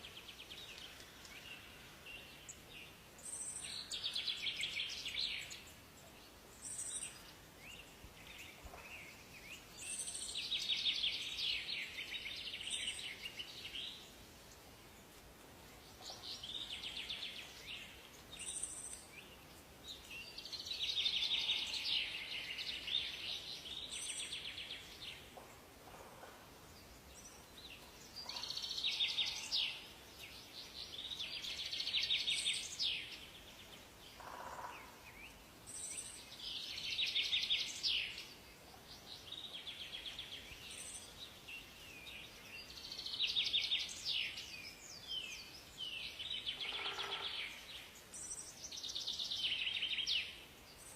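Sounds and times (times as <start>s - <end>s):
faint steady background hiss: 0.0s - 50.9s
songbirds trilling: 26.5s - 50.9s.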